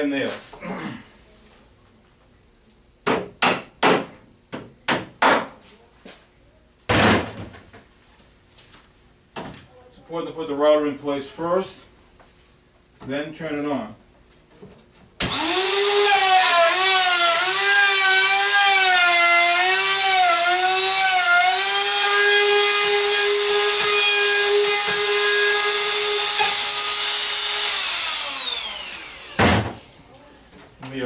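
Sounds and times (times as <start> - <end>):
electric router motor whine: 15.2 - 29.6.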